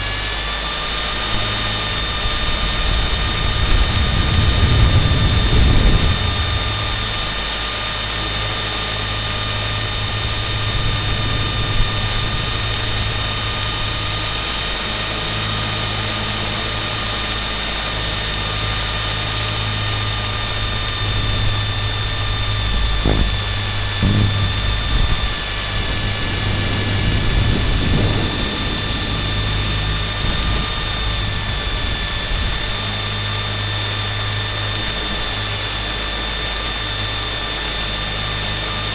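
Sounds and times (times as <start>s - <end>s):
low rotor hum: 0.0s - 38.5s
high motor whine: 0.0s - 38.9s
low thumps: 19.9s - 30.4s.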